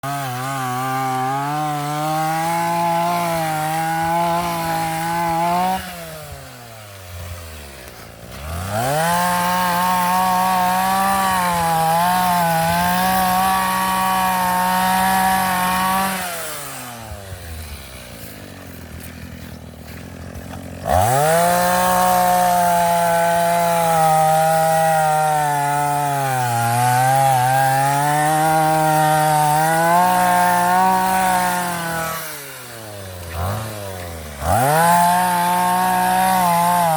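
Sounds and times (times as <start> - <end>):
two-stroke auger engine revving: 0.0 - 36.9.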